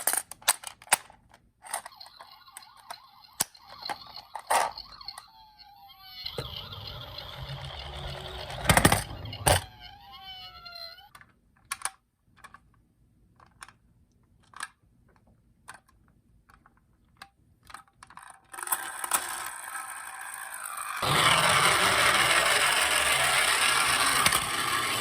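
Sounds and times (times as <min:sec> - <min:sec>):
toy cars clicking and clacking: 0:00.0 - 0:12.6, 0:15.7 - 0:25.0
toy siren wailing: 0:01.7 - 0:11.2, 0:19.3 - 0:25.0.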